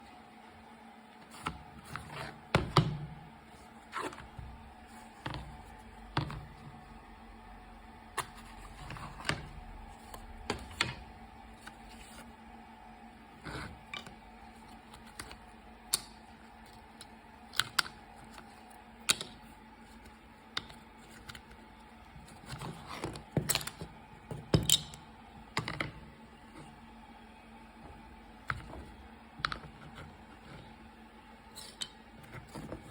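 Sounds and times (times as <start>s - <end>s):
faint steady hum: 0.0s - 32.9s
clicks and knocks of small parts: 17.0s - 18.4s, 19.0s - 19.4s.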